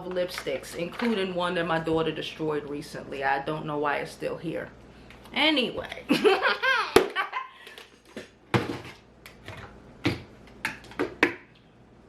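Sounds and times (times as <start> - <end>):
woman laughing: 6.1 - 7.7.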